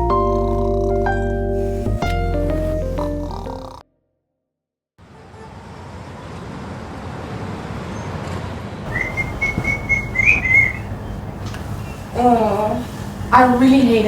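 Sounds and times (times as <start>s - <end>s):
rumbling background noise: 6.6s - 14.0s
person whistling: 8.9s - 10.9s.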